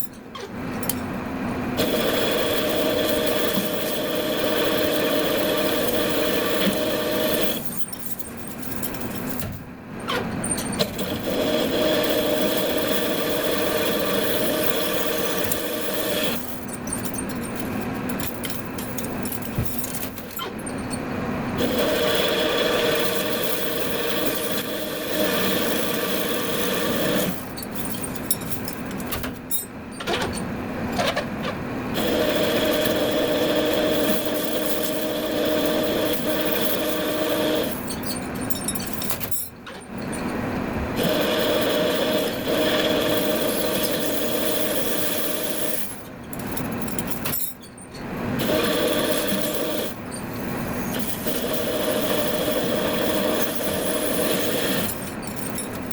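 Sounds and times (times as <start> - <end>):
metal lathe whining: 21.6 - 27.4, 32.0 - 38.0.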